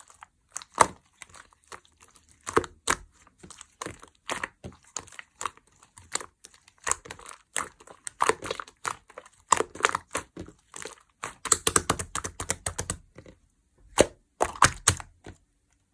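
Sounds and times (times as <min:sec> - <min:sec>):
slime crackling and popping: 0:03.7 - 0:13.0, 0:13.9 - 0:15.2.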